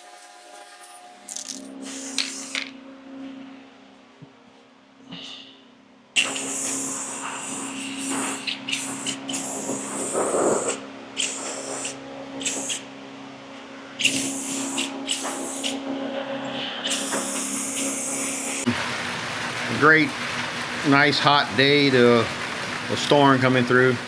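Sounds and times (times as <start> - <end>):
welding arc: 0.0 - 2.7, 6.2 - 12.9, 14.0 - 18.9
steady low hum: 0.0 - 23.3.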